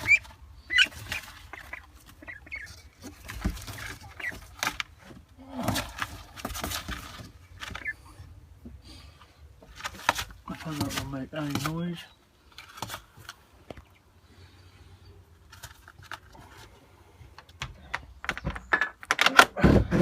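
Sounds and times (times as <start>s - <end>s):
ducklings peeping: 0.0s - 5.0s, 7.2s - 9.4s, 13.0s - 15.5s
clicks and rustles of movement: 0.0s - 8.8s, 9.5s - 13.9s, 15.4s - 20.0s.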